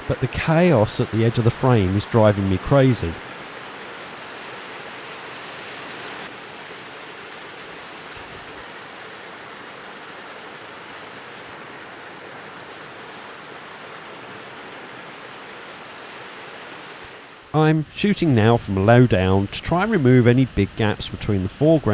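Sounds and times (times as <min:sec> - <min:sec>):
waterfall and stream rushing: 0:00.0 - 0:21.9.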